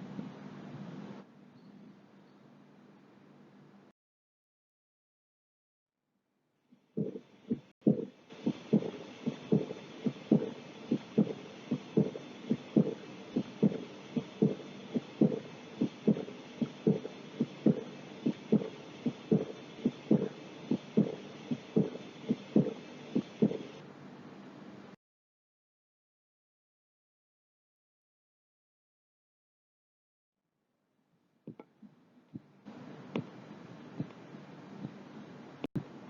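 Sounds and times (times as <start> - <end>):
heartbeat thumps: 7.0 - 23.8, 34.8 - 35.0
steady hiss: 7.0 - 23.8.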